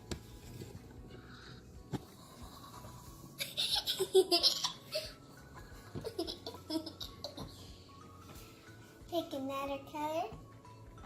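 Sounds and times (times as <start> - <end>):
child giggling: 3.4 - 5.2, 5.9 - 7.5.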